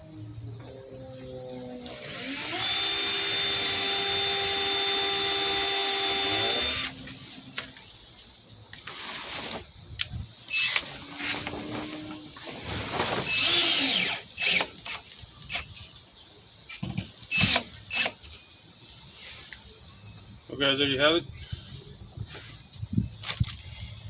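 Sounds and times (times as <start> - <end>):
cordless drill running: 1.9 - 7.0, 13.3 - 14.7, 17.3 - 18.1.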